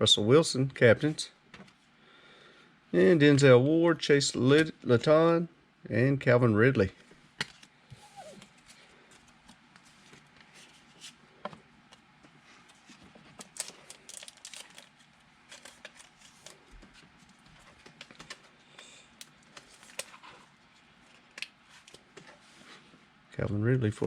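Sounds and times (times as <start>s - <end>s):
cards clicking and rustling: 12.7s - 20.4s.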